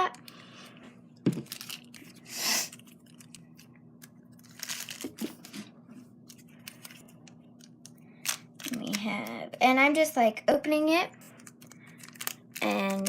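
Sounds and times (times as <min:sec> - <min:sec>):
plastic wrapper crinkling and tearing: 0:01.4 - 0:03.5, 0:11.4 - 0:13.0
plastic crackles and clicks: 0:11.4 - 0:13.0.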